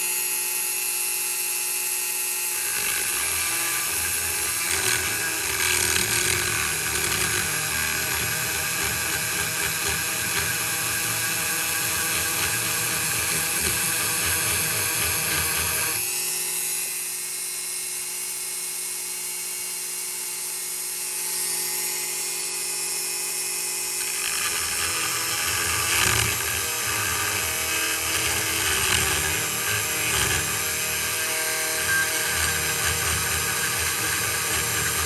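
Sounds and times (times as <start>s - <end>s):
rotary tool grinding steel: 0.0s - 17.0s, 21.0s - 35.0s
rotary tool whining: 0.0s - 17.8s, 20.5s - 35.0s.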